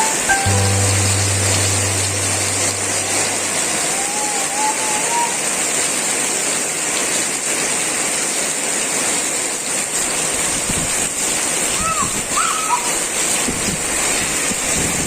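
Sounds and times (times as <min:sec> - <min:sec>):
rain falling: 0:00.0 - 0:15.0
low hum: 0:00.3 - 0:04.4.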